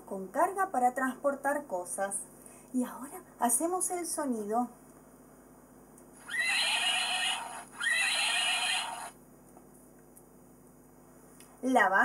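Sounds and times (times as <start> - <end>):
horse neighing: 6.2 - 9.1.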